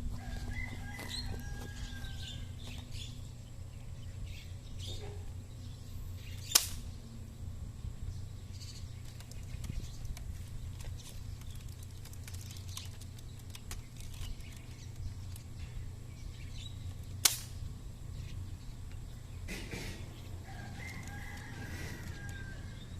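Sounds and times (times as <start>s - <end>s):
steady low hum: 0.0s - 22.9s
toy dart rifle shot snap: 6.4s - 6.9s, 17.2s - 17.6s.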